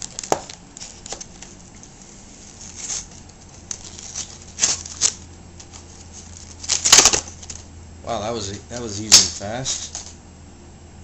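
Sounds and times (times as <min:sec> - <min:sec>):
packaging rustling: 0:00.0 - 0:07.7, 0:08.8 - 0:10.2.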